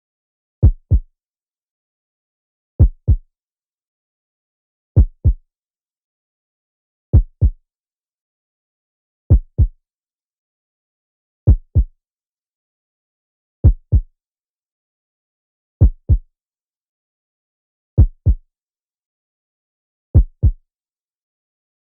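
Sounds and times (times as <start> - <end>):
heartbeat thumps: 2.8 - 3.2, 5.0 - 5.4, 7.2 - 7.6, 9.3 - 9.7, 11.5 - 11.9, 13.6 - 14.1, 15.8 - 16.2, 18.0 - 18.4, 20.2 - 20.6.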